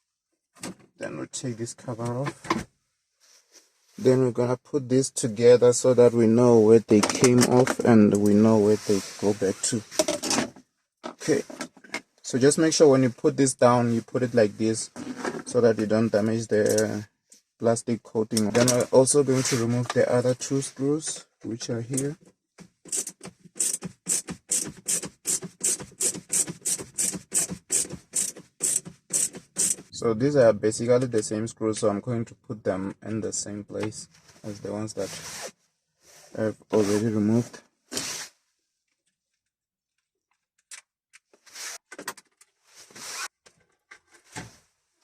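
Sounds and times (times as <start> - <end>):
ratcheting screwdriver rasping: 22.9 - 29.9.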